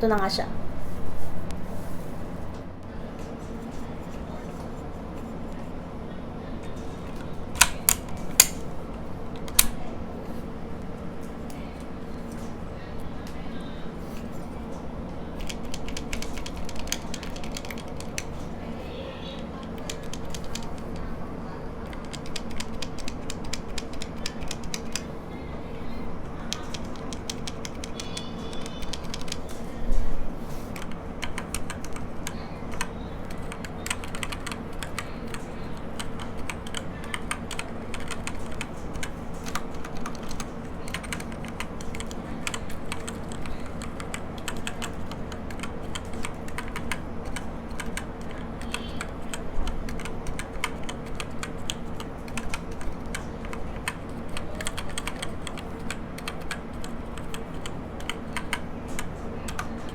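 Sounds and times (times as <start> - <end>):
keyboard keystroke clacks: 6.6 - 8.7, 9.4 - 9.8, 15.4 - 18.4, 19.6 - 21.1, 21.8 - 25.1, 26.4 - 29.6, 30.7 - 59.9.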